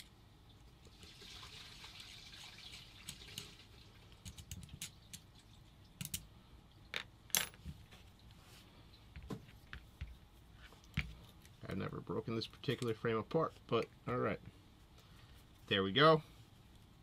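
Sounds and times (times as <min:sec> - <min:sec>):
small metallic clicks and taps: 0:06.0 - 0:06.3
soft rustle: 0:07.7 - 0:13.6.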